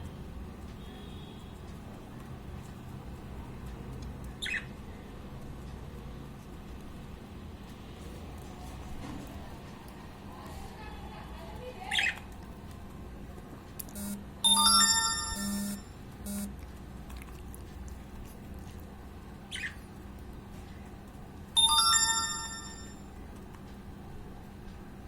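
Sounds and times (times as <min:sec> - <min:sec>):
phone ringtone chime: 0:14.0 - 0:16.5, 0:21.6 - 0:23.1.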